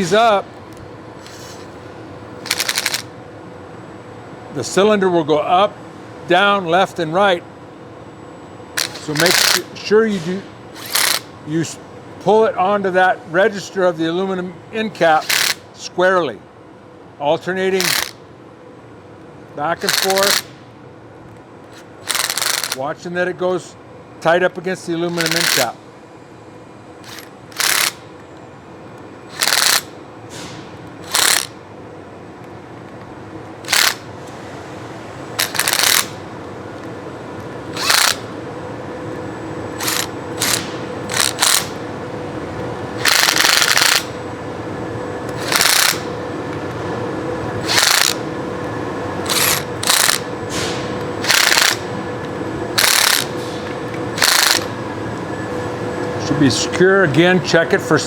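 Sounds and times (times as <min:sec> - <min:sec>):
steady hum: 0:00.0 - 0:58.0
power tool bursts: 0:01.2 - 0:01.7, 0:02.4 - 0:03.1, 0:08.8 - 0:11.3, 0:15.1 - 0:15.6, 0:17.8 - 0:18.2, 0:19.8 - 0:20.5, 0:22.0 - 0:22.8, 0:25.1 - 0:25.8, 0:27.0 - 0:28.0, 0:29.3 - 0:31.6, 0:33.7 - 0:34.1, 0:35.4 - 0:36.2, 0:37.7 - 0:38.3, 0:39.8 - 0:41.8, 0:43.0 - 0:44.2, 0:45.4 - 0:46.1, 0:47.6 - 0:48.2, 0:49.2 - 0:51.9, 0:52.8 - 0:53.6, 0:54.2 - 0:54.8.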